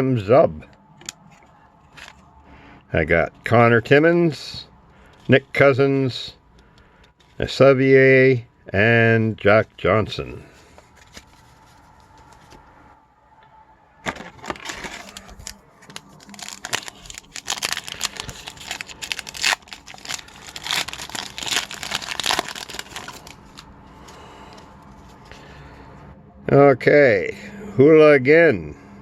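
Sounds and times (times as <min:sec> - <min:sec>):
foil wrapper tearing and crinkling: 0:14.1 - 0:23.7.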